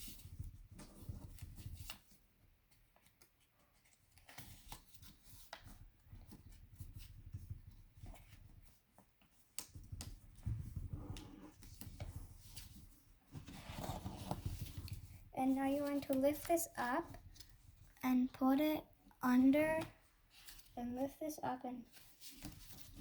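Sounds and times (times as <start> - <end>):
paper rustling and crackling: 0.0 - 17.9, 21.9 - 23.0.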